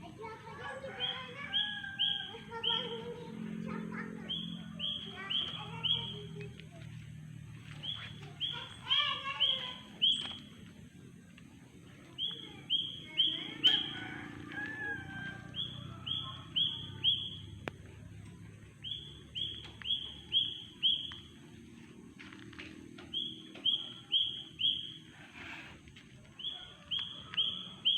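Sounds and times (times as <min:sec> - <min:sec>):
soft bird chirps: 0:07.8 - 0:10.7, 0:12.1 - 0:14.1, 0:18.8 - 0:21.4, 0:23.0 - 0:25.7.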